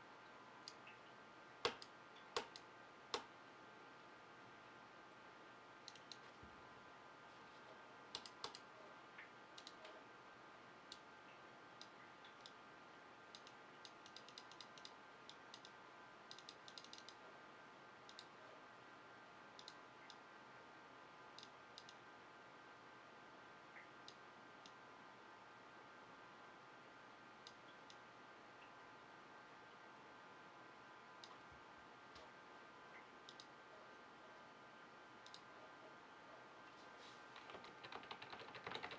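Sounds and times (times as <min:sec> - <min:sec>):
mouse clicks: 0:01.6 - 0:03.3, 0:05.8 - 0:06.3, 0:08.1 - 0:10.0, 0:13.3 - 0:17.2, 0:18.1 - 0:18.3, 0:19.6 - 0:20.2, 0:21.4 - 0:22.0, 0:33.2 - 0:33.6, 0:35.2 - 0:35.5.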